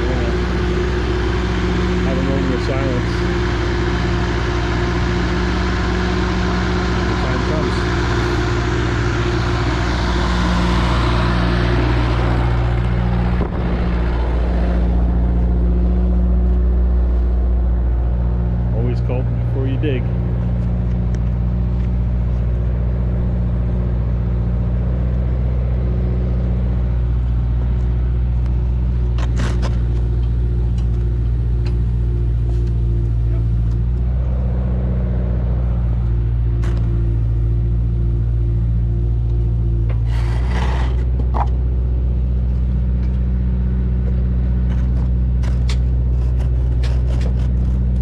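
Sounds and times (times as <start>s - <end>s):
machine engine running: 0.0s - 41.6s.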